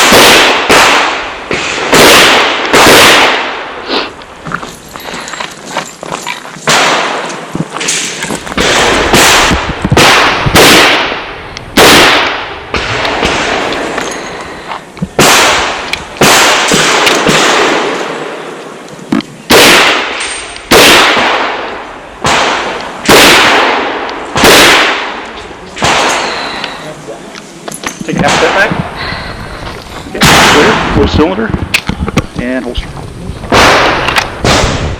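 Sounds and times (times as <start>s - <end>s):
handgun shots: 0.0s - 3.4s.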